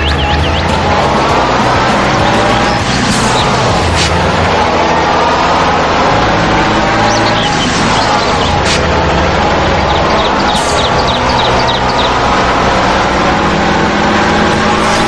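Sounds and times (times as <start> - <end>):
motor running: 0.0 - 15.0
faint high chirps: 6.7 - 13.0.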